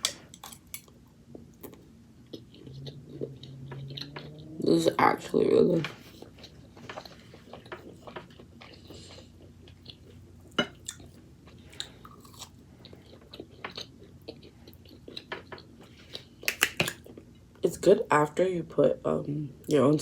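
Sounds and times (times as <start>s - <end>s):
person chewing crunchy food: 0.0s - 4.6s, 6.0s - 17.4s.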